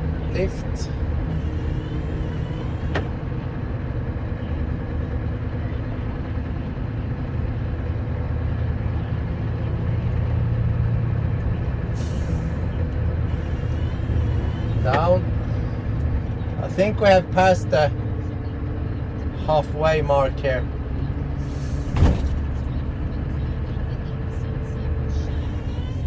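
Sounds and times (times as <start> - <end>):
truck diesel engine under load: 0.0 - 26.0.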